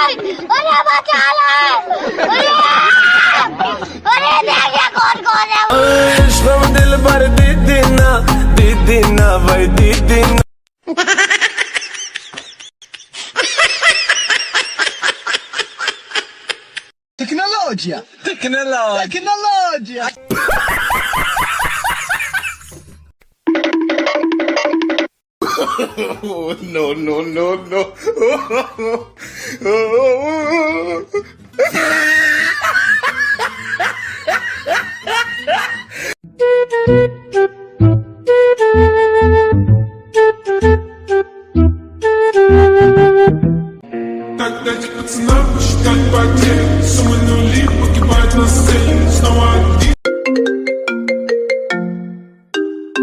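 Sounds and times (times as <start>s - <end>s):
laughter: 1.7s - 5.6s, 10.8s - 16.9s, 20.3s - 22.9s, 25.4s - 26.7s, 27.6s - 29.1s, 31.6s - 36.0s
music: 5.7s - 10.4s, 36.2s - 53.0s
person giggling: 27.7s - 29.1s, 30.5s - 36.0s.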